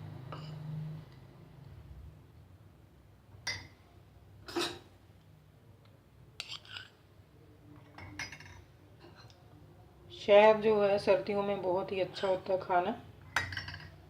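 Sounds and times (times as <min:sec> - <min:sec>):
spoon clinking against cups: 0:07.9 - 0:08.6, 0:13.3 - 0:14.0.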